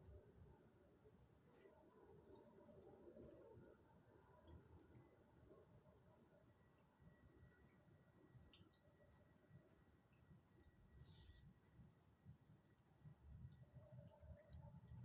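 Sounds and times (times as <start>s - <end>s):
insect trill: 0.0s - 15.0s.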